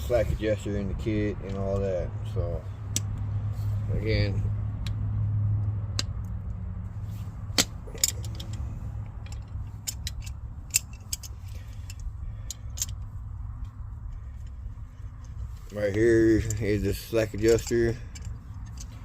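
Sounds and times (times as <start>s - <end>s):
steady low hum: 0.0s - 19.0s
metal tools clinking: 7.6s - 13.1s, 14.0s - 19.0s.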